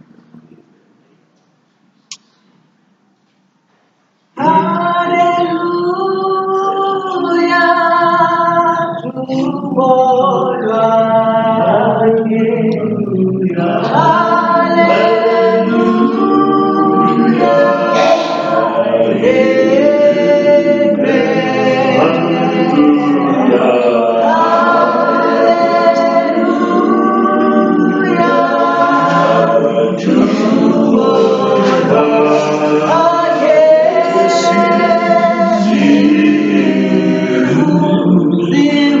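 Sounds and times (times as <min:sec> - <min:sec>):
congregation singing: 0:04.4 - 0:39.0.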